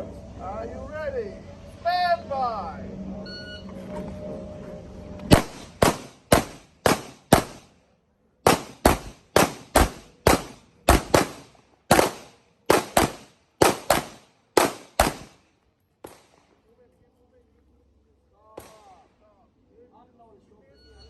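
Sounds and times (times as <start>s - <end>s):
handgun shots: 5.3s - 7.7s, 8.5s - 15.4s.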